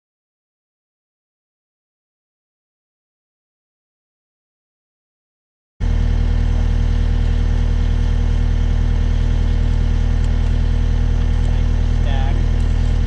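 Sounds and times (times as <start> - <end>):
diesel engine idling: 5.8 - 13.0.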